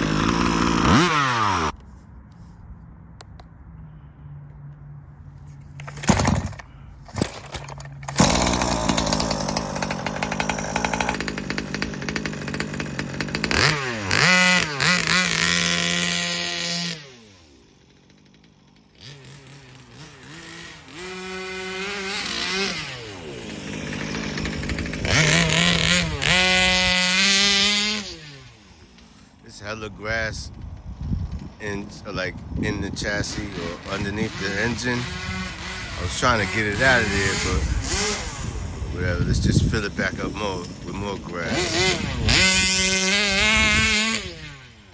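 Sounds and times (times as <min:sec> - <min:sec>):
small two-stroke engine revving: 0:00.0 - 0:01.8, 0:05.4 - 0:44.9.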